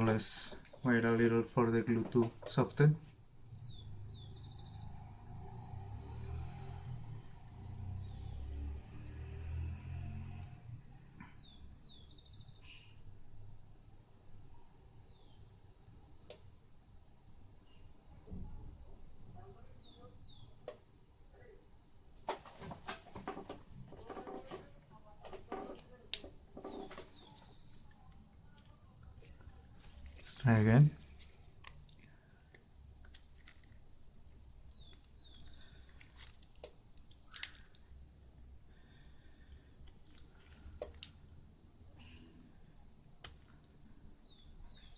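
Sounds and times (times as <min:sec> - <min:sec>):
faint bird chirps: 0:02.8 - 0:06.0, 0:17.6 - 0:21.8, 0:25.9 - 0:31.0, 0:43.8 - 0:44.9.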